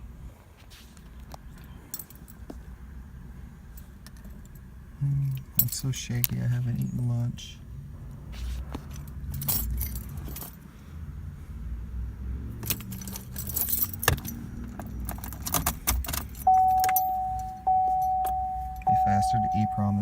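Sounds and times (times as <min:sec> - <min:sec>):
car keys jangling: 0:01.6 - 0:02.5, 0:05.3 - 0:07.0, 0:08.8 - 0:10.7, 0:12.6 - 0:18.9
low hum: 0:16.4 - 0:20.0
steady electronic beep tone: 0:16.5 - 0:20.0.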